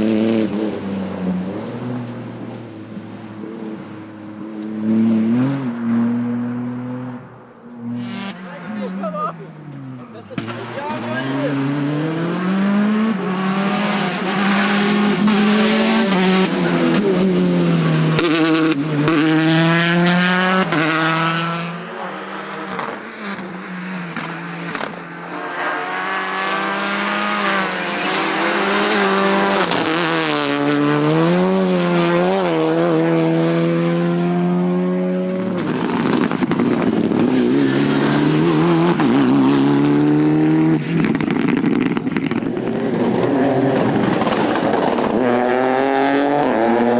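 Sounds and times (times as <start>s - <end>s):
rally car engines revving past: 0.0s - 46.9s.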